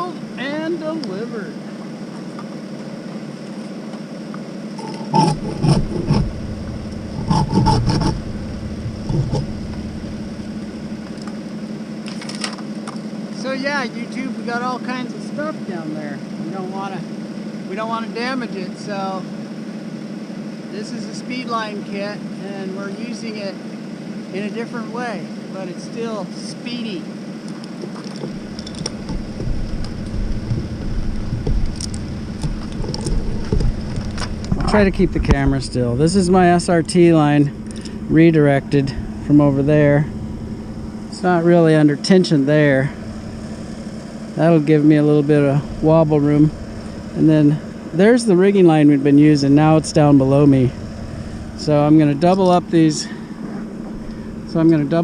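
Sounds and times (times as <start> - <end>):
engine running: 0.0 - 55.0
knocking and scraping: 4.8 - 11.4, 28.0 - 37.1
wind buffeting microphone: 5.1 - 11.1, 28.3 - 41.2.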